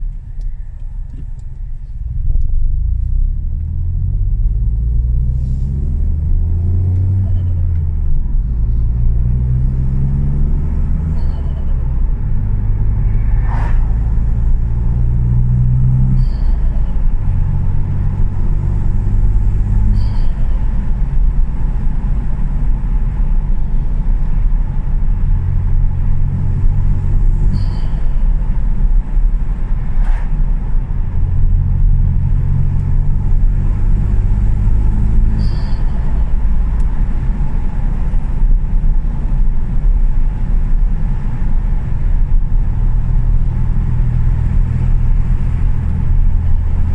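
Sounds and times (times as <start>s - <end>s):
turbo car engine revving: 2.1s - 46.9s
turbo flutter chirp: 27.5s - 28.2s, 35.3s - 36.2s.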